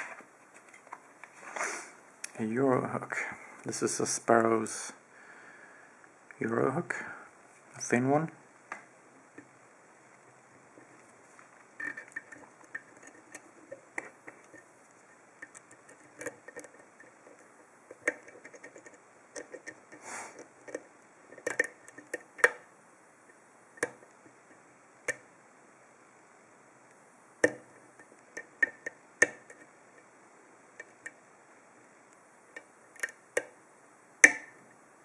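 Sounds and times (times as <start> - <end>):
lock pick scrape: 11.8 - 22.6.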